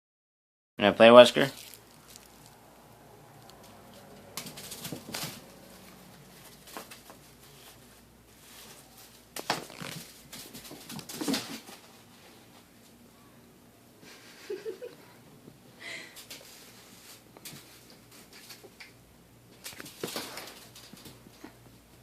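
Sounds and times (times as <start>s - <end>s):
bag rustling and crinkling: 1.4s - 2.8s, 3.4s - 10.3s.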